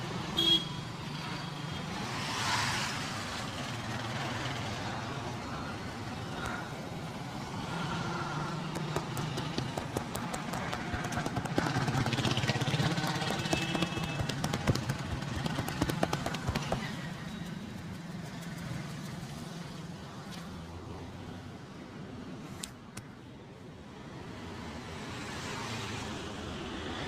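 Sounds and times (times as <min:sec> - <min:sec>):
sharp clicks and taps: 0:08.7 - 0:12.2.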